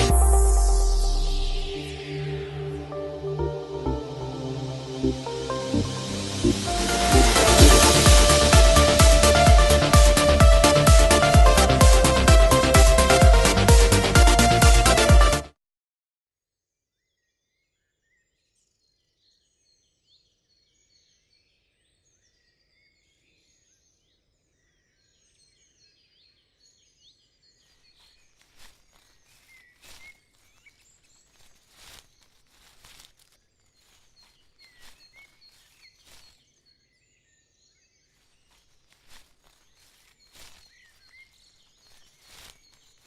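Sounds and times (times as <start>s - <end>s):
birds chirping and trilling: 33.8s - 43.0s.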